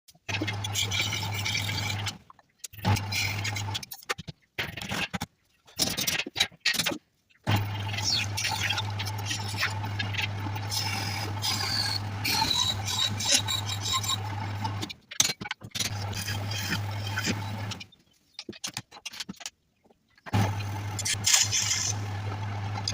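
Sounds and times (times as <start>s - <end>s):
turning tool cutting wood: 0.2s - 2.2s, 2.8s - 3.9s, 7.5s - 15.0s, 15.7s - 17.9s, 20.3s - 22.9s
wood lathe motor hum: 0.3s - 2.2s, 7.5s - 14.9s, 15.9s - 17.8s, 20.4s - 22.9s.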